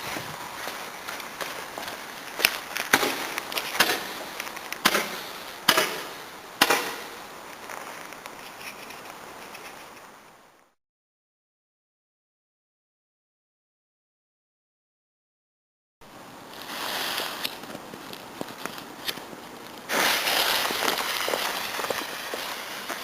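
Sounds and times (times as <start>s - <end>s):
firework cracks: 1.2s - 8.3s, 18.4s - 23.0s
firework hissing: 16.5s - 17.6s, 19.9s - 23.0s.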